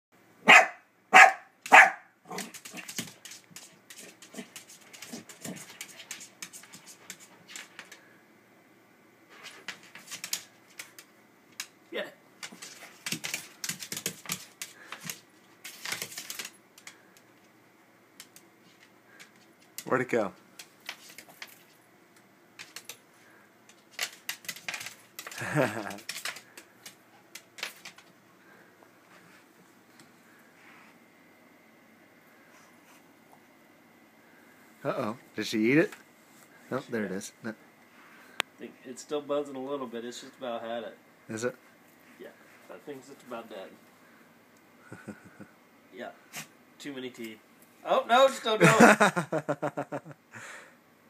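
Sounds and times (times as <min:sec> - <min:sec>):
dog barking: 0:00.4 - 0:02.5.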